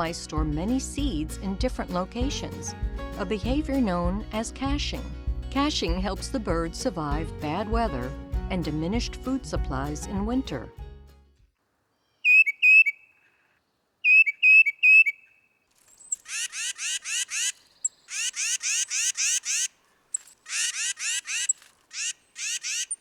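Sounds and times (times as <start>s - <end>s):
titmouse calling: 15.9s - 23.0s.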